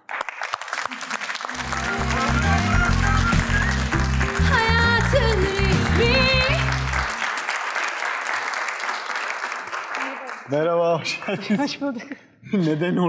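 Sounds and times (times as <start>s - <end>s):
audience applause: 0.0s - 11.6s
entrance music with pulsing bass: 1.6s - 7.1s.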